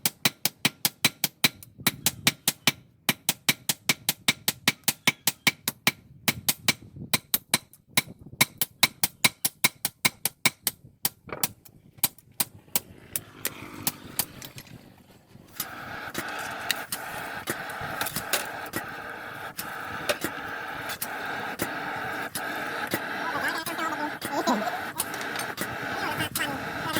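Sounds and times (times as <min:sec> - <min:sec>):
machine motor running: 0:15.5 - 0:26.9.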